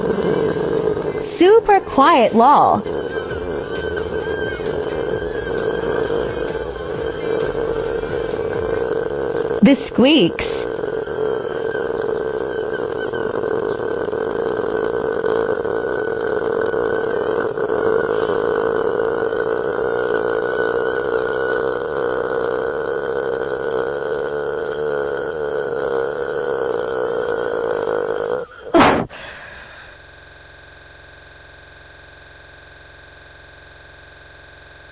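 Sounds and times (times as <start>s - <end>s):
girl burping: 0.0s - 3.6s, 7.4s - 11.2s.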